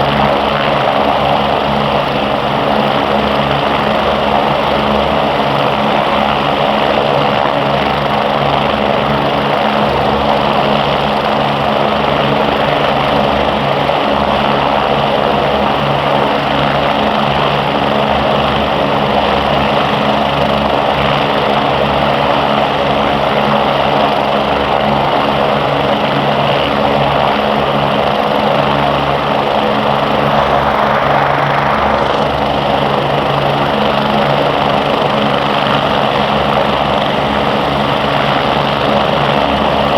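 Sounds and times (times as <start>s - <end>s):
helicopters running: 0.0s - 39.9s.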